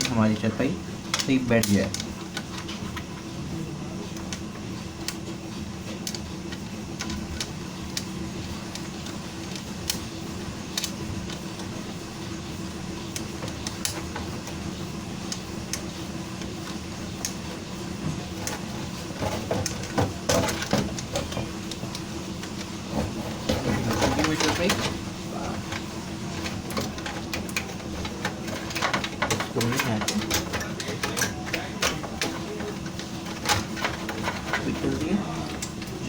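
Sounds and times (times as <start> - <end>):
metal computer parts clicking: 0.0 - 3.1, 18.2 - 36.0
steady low hum: 0.0 - 36.0.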